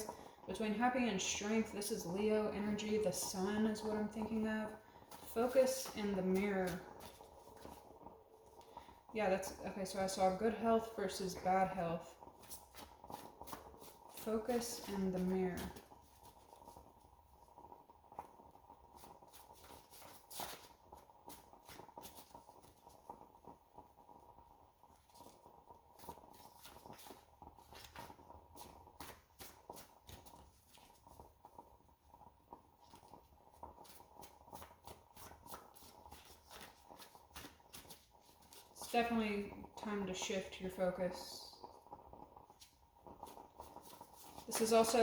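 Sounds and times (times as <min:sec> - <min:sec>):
cards being shuffled: 0:19.5 - 0:20.7, 0:33.8 - 0:38.6.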